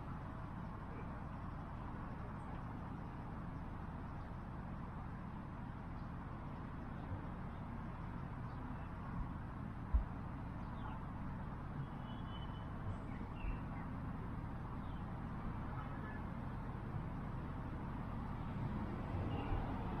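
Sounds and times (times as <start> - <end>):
soft low thumps: 9.9 - 10.2
faint bird chirps: 11.8 - 14.0.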